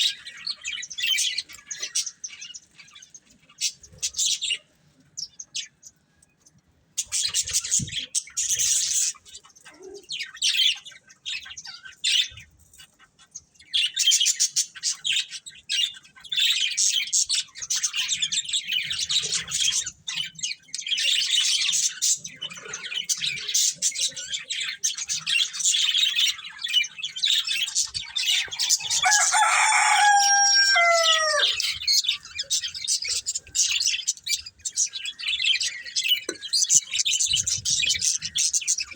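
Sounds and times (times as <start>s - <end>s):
budgerigars chirping: 13.8s - 38.9s
low descending bird call: 28.2s - 31.8s.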